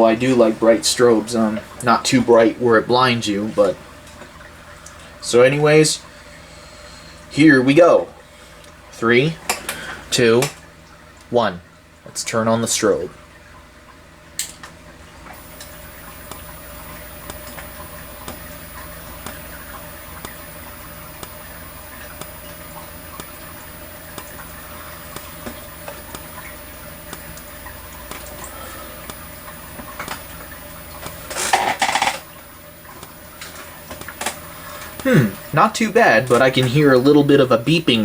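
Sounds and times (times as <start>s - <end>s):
strobe flash clicks: 15.4s - 37.1s
high-pitched whine: 15.4s - 37.8s.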